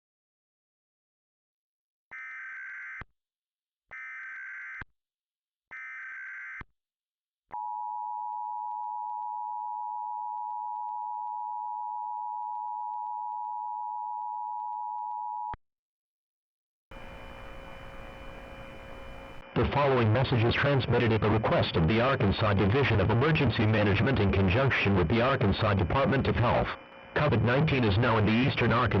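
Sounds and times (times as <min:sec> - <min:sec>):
digital data bursts: 0:16.9 - 0:19.4
two-tone attention signal: 0:16.9 - 0:19.4.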